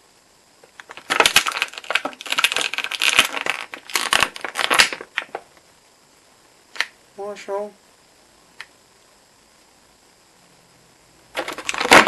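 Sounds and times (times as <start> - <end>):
packaging crinkling: 0.6 - 5.4, 11.3 - 12.0.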